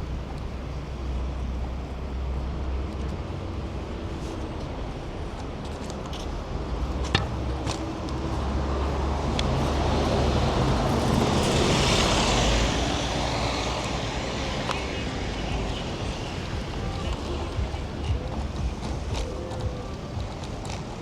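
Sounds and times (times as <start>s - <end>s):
city street traffic: 0.0s - 21.0s
car passing close by: 7.4s - 17.5s.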